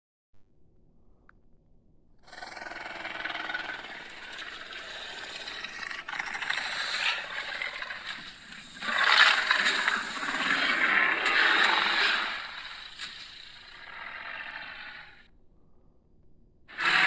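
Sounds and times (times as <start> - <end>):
rasping creature growl: 2.2 - 15.2, 16.7 - 17.0.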